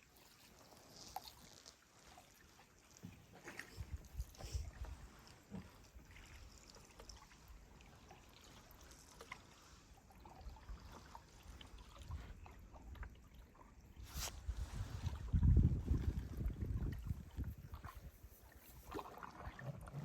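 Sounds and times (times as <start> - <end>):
water dripping off paddle: 0.3 - 13.6
wind rumble on microphone: 3.7 - 5.2, 14.0 - 19.0.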